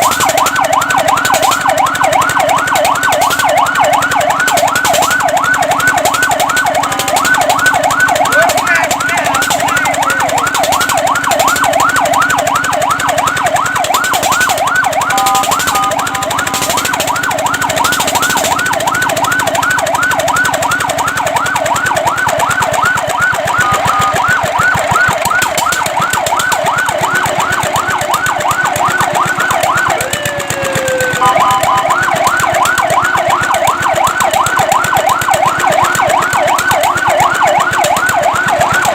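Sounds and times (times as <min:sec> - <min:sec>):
fire truck siren yelping: 0:00.0 - 0:38.9.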